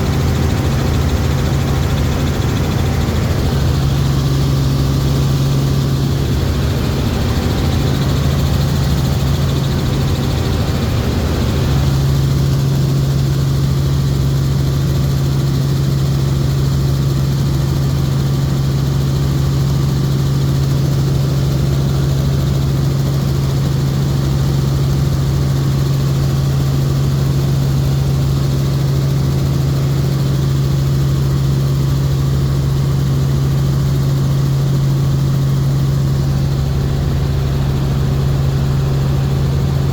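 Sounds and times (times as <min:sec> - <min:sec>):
helicopter engine and rotor drone: 0:00.0 - 0:39.9.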